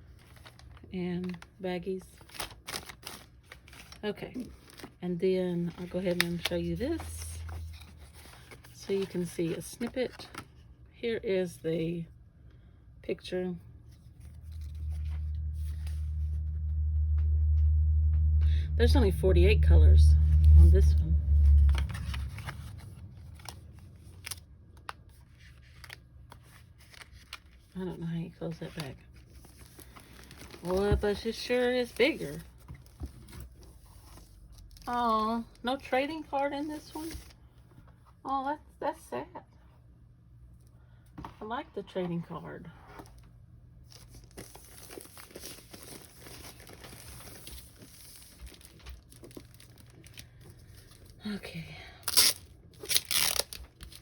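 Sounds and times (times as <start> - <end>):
packaging rustling: 0.0 - 10.6, 21.5 - 27.8, 28.6 - 35.7, 43.0 - 51.2, 52.0 - 54.0
low rumble: 4.8 - 9.1, 13.5 - 25.3.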